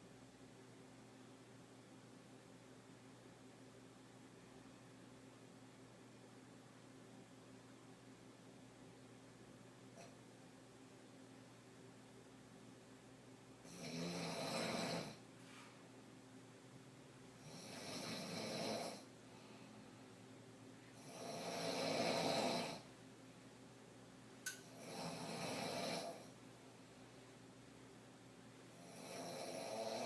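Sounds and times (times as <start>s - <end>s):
woman snoring: 13.6s - 15.2s, 17.4s - 19.1s, 20.9s - 22.9s, 24.7s - 26.4s, 28.7s - 30.0s.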